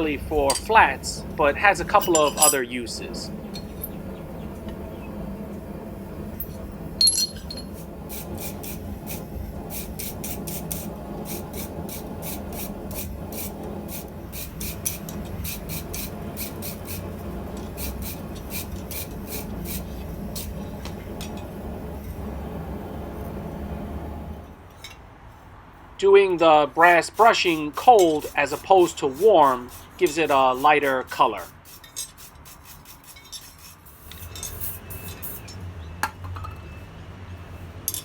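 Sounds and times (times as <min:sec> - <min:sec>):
wire brush scrubbing steel: 0:00.0 - 0:04.0, 0:07.0 - 0:20.6, 0:26.3 - 0:35.5.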